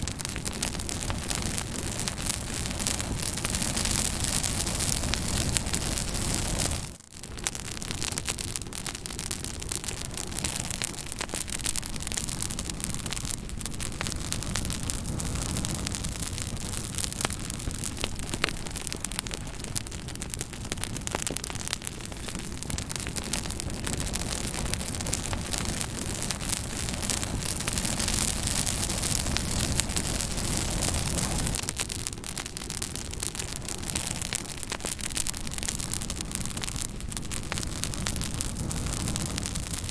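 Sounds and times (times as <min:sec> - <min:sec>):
fire crackling: 0:00.0 - 0:39.9.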